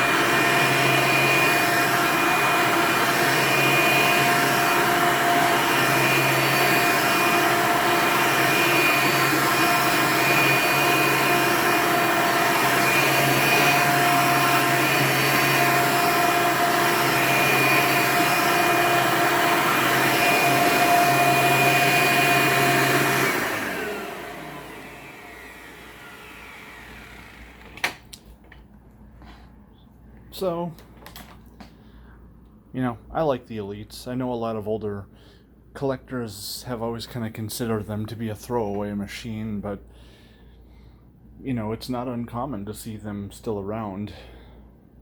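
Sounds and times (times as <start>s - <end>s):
vacuum motor winding down: 0.0s - 28.2s
vacuum cleaner whining: 0.0s - 28.5s.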